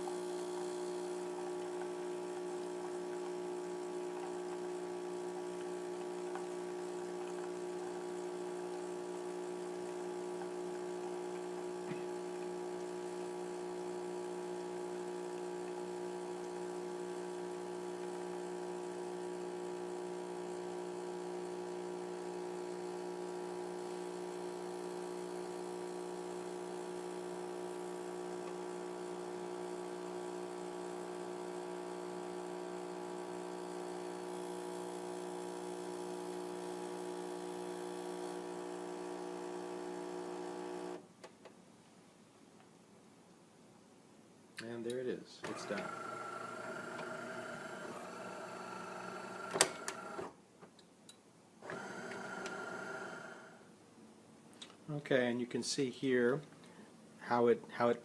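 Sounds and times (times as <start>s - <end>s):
espresso machine pump humming: 0.0s - 41.0s, 45.5s - 50.3s, 51.6s - 53.6s.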